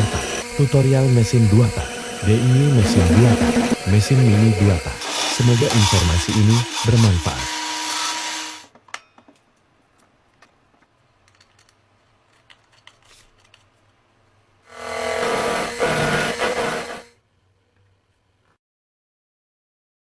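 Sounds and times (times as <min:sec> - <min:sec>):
small motor whirring: 0:00.0 - 0:08.7, 0:14.7 - 0:17.1.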